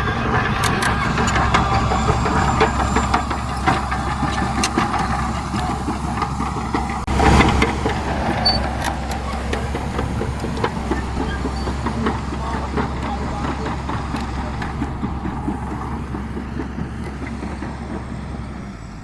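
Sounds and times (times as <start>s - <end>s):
bulldozer engine under load: 0.0s - 19.0s
metallic clanks of steel tracks: 0.0s - 19.0s.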